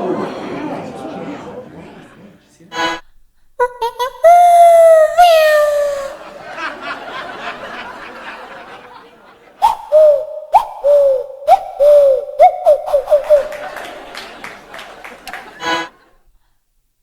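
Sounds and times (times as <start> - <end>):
mouth-made chuckle-like sounds: 3.6 - 6.8
mouth-made sliding tone: 9.6 - 13.7
mouth-made chirps with clicks: 9.6 - 13.9.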